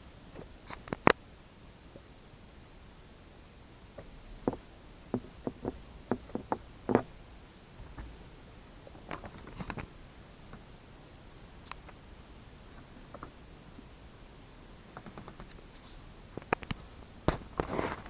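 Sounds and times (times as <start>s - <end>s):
hard objects clicking and knocking: 4.5s - 7.1s.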